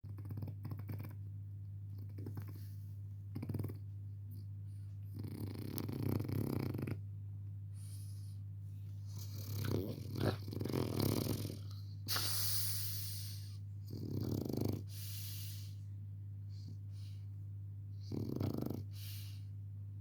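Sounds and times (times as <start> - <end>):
puppy snoring: 0.0 - 1.3, 1.9 - 4.4, 5.0 - 7.1, 9.0 - 15.8, 17.9 - 19.5
steady low hum: 0.0 - 20.0.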